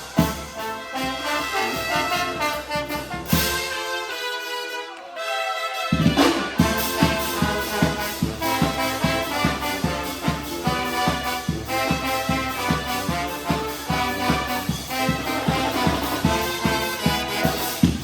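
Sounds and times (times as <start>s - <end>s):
brass band playing: 0.0s - 18.0s
bass drum beat: 6.0s - 18.0s.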